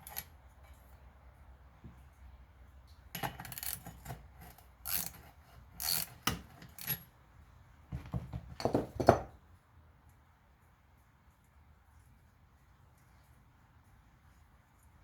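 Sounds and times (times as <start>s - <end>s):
metal tools clinking and scraping: 0.0s - 0.8s.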